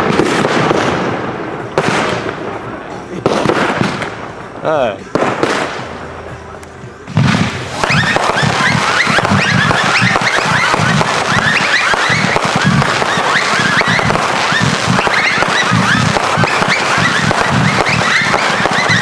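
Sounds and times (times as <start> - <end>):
fireworks crackling: 0.0 - 19.0
rising firework whistles: 7.2 - 19.0.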